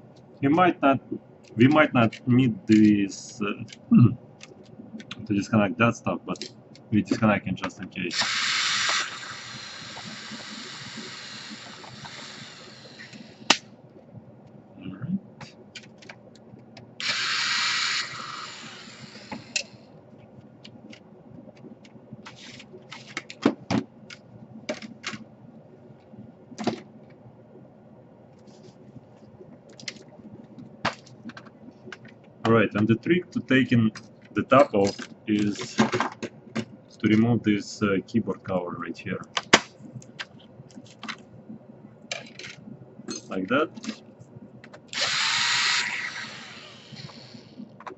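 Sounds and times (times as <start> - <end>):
steady hiss: 0.4 - 4.2, 5.2 - 13.6, 17.0 - 20.0.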